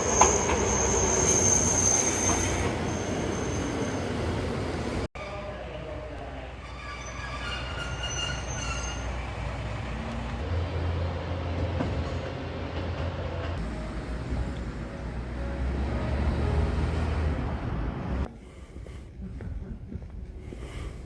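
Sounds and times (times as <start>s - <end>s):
high wheel squeal: 0.0s - 4.2s, 6.7s - 9.4s
train rumbling on track: 0.0s - 21.0s.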